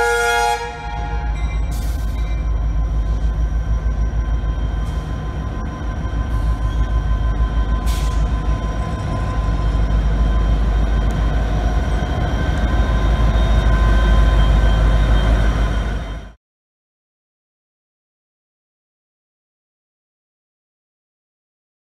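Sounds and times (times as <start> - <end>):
train rumbling past: 0.0 - 16.4.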